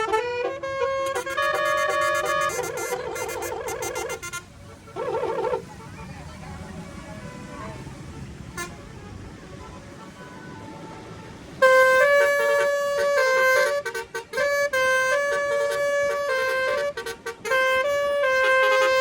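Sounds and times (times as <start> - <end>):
air horn playing a melody: 0.0 - 5.8, 7.2 - 19.0.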